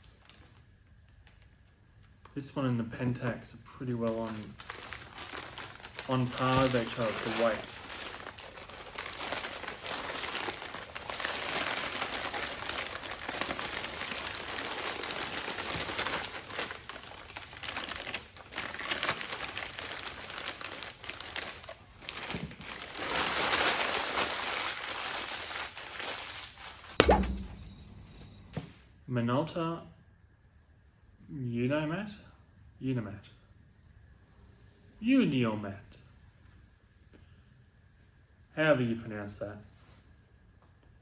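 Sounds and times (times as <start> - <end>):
wrapping crinkling: 0.0 - 2.2, 4.0 - 27.5
sharp knock: 27.0 - 27.8.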